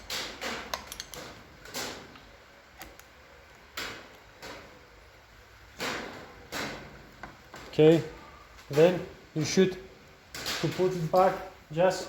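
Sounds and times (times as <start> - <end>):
metal parts clicking: 0.0 - 1.4.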